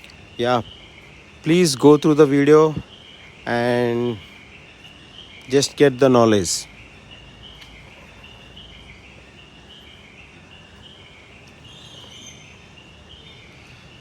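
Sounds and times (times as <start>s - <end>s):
steady hiss: 0.0s - 9.3s
faint high-pitched chirping: 0.0s - 14.0s.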